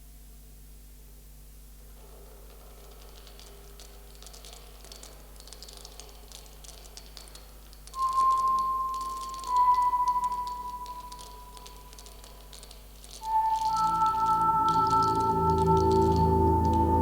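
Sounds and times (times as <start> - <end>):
faint crackling clicks: 1.5 - 17.0.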